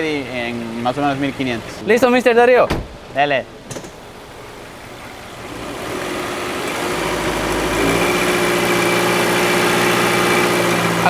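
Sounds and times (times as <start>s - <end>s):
car engine revving steadily: 0.0s - 1.9s, 4.1s - 11.0s.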